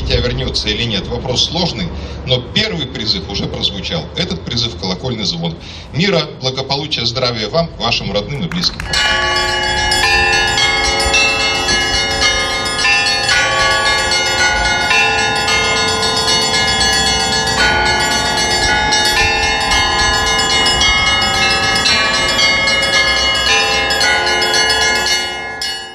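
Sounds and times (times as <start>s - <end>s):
church bells ringing: 7.2s - 25.9s.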